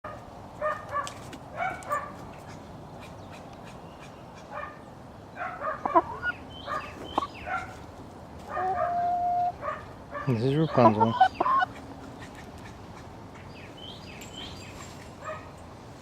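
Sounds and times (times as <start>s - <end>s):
chickens clucking: 5.8s - 7.7s, 8.5s - 9.6s, 10.2s - 13.5s
chicken sharp call: 8.6s - 9.6s.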